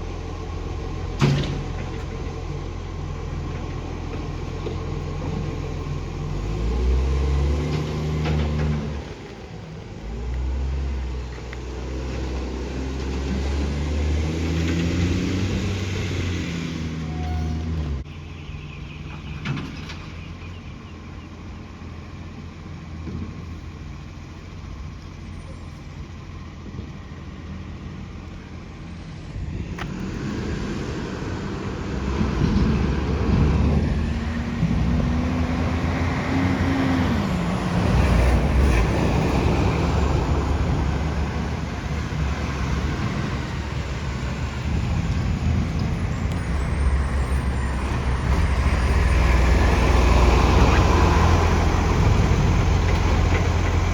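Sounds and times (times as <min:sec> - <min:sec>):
diesel truck engine revving: 0:00.0 - 0:18.1, 0:29.2 - 0:53.9.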